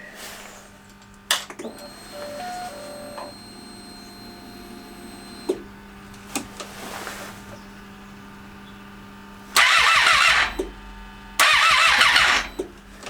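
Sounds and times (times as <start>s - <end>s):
high electrical whine: 0.0s - 6.2s
brief whirr: 0.0s - 7.6s, 9.5s - 10.8s, 11.4s - 12.7s
steady low hum: 0.0s - 13.0s.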